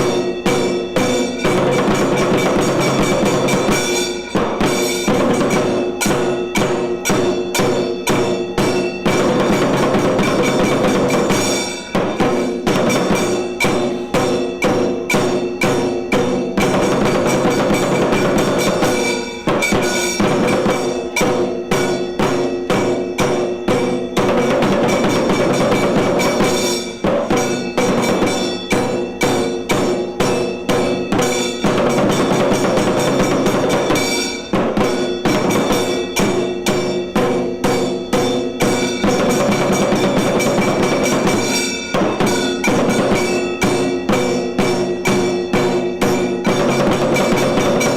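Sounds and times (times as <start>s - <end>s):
temple percussion ensemble playing: 0.0s - 47.9s.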